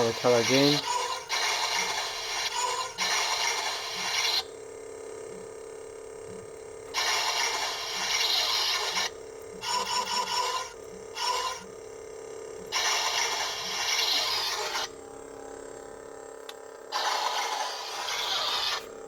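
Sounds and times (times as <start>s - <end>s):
harsh noisy electronic bursts: 0.0s - 4.5s, 7.0s - 9.1s, 12.8s - 14.9s, 16.9s - 18.8s
electronic lightsaber hum: 0.0s - 19.0s.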